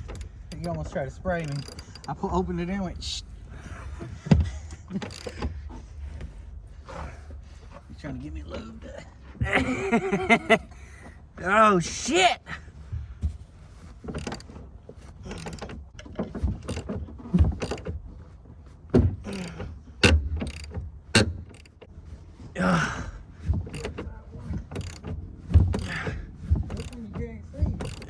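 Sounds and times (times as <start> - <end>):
wrench clicking on metal bolts: 0.0 - 2.4, 4.9 - 5.5, 14.1 - 14.6, 15.2 - 17.0, 17.6 - 17.9, 19.2 - 21.9, 23.7 - 24.1, 24.7 - 26.1, 26.7 - 28.0.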